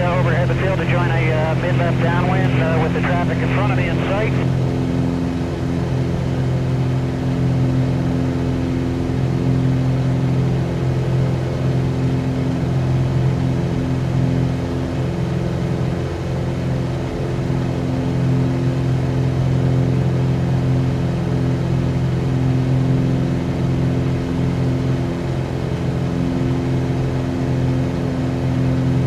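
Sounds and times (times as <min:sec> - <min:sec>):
aircraft engine and propeller droning: 0:00.0 - 0:29.0.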